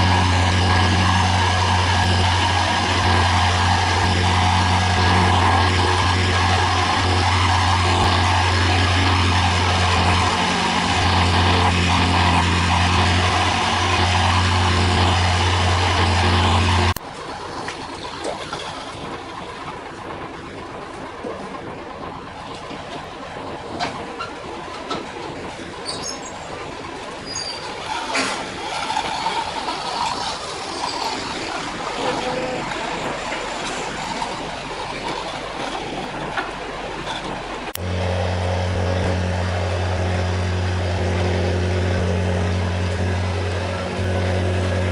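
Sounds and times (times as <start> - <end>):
heavy construction vehicle rumbling: 0.0 - 44.9
machinery engine humming: 0.0 - 44.9.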